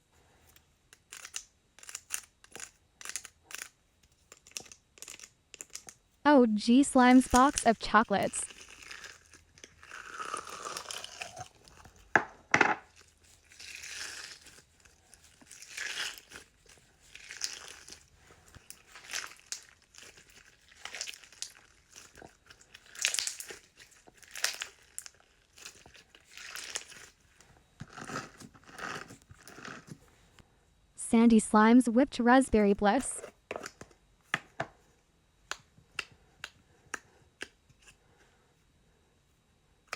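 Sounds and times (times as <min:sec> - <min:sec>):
slime squelching: 0:12.9 - 0:27.2.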